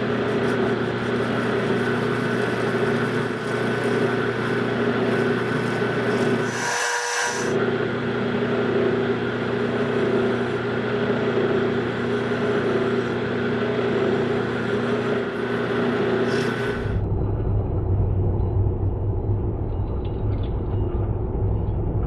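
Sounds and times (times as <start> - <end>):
metal lathe humming: 0.0 - 17.1.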